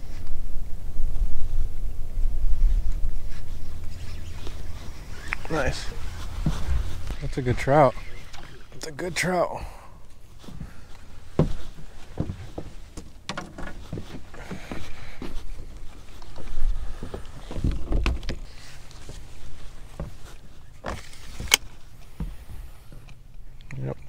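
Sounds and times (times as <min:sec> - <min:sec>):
steady low rumble: 0:00.0 - 0:17.9
knocks and thumps on a boat: 0:10.5 - 0:14.9, 0:17.0 - 0:19.2, 0:22.1 - 0:23.0.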